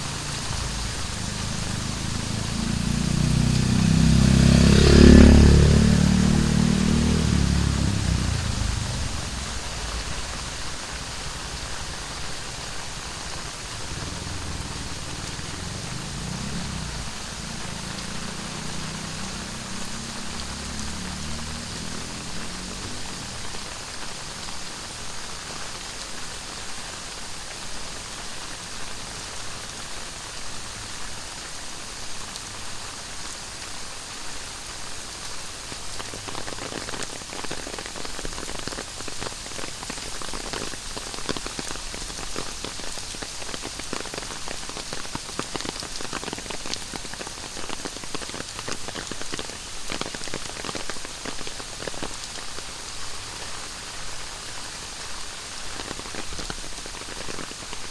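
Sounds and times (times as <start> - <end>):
heavy rain falling: 0.0 - 57.9.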